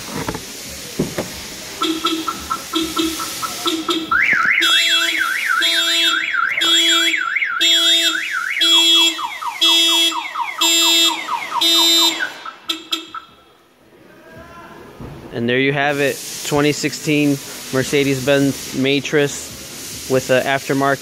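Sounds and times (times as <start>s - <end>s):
falling siren sweeps with beeping: 1.8s - 13.4s
car alarm beeps: 1.8s - 13.6s
car alarm warbling siren: 1.8s - 13.6s.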